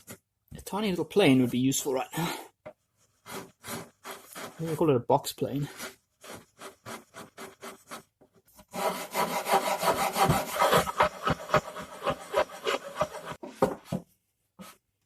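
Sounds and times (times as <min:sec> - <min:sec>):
hand tool scraping panel edge: 0:03.2 - 0:04.8, 0:05.7 - 0:14.0.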